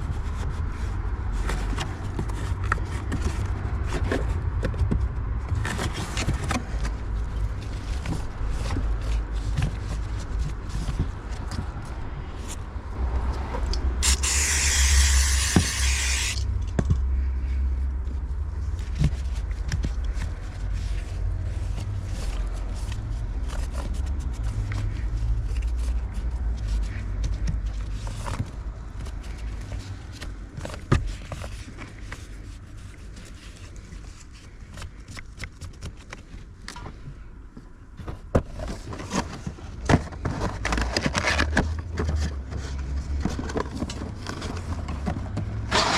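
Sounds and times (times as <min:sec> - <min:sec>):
spray hissing: 0:14.0 - 0:16.4.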